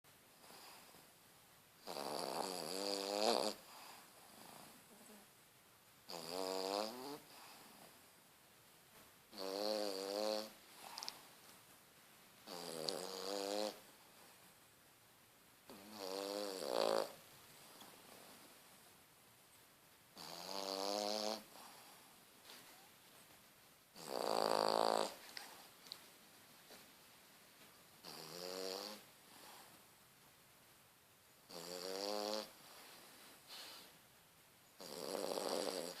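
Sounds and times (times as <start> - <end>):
pet snoring: 1.8 - 5.2, 6.1 - 7.9, 9.3 - 11.1, 12.4 - 13.9, 15.7 - 17.2, 20.2 - 21.9, 23.9 - 25.2, 28.0 - 29.6, 31.5 - 32.6, 34.8 - 36.0.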